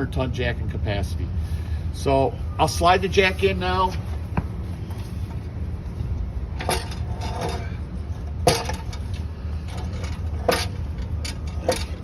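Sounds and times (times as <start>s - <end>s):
steady low rumble: 0.0s - 12.0s
metal jack knocking and clanking: 6.6s - 7.7s, 8.3s - 12.0s.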